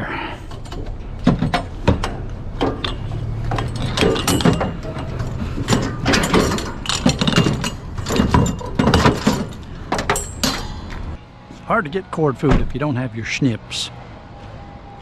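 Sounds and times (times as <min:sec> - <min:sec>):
scrap metal knocking and clanking: 0:00.5 - 0:11.2.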